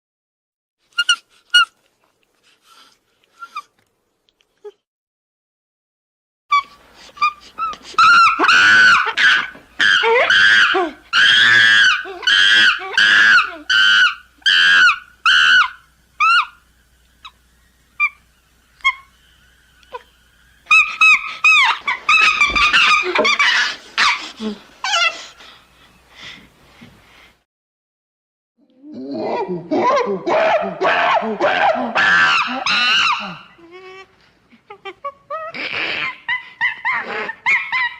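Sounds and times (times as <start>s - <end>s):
primate screaming: 7.2s - 16.6s, 29.4s - 33.6s.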